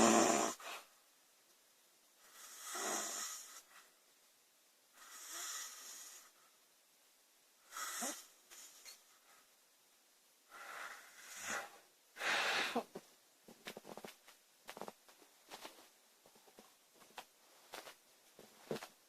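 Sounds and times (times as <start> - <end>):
woman breathing noisily in sleep: 7.6 - 9.0, 10.5 - 12.9.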